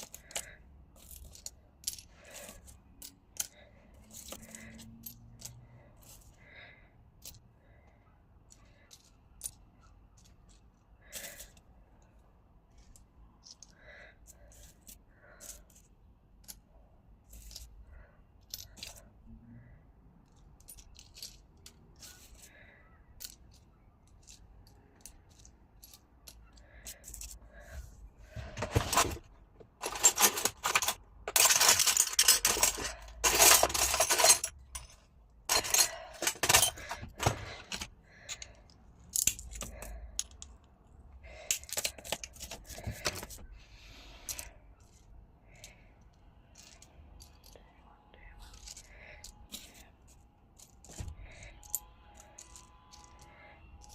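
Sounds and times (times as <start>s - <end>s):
glass pieces clinking and clattering: 29.8s - 34.9s, 35.5s - 38.5s.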